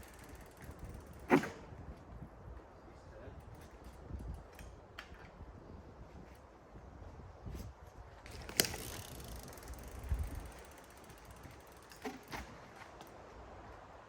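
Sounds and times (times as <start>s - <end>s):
bike freehub ticking: 0.0s - 1.7s, 3.4s - 5.4s, 8.3s - 12.5s
bike knocking and rattling: 0.0s - 6.5s, 7.5s - 13.4s.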